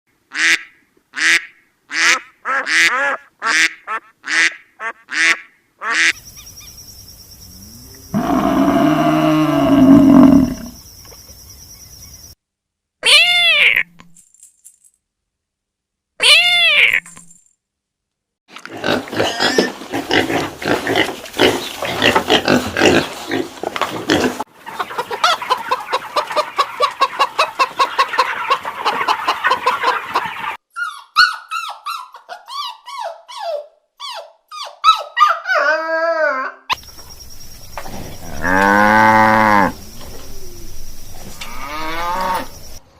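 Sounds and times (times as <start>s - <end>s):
long low animal call: 7.6s - 10.8s.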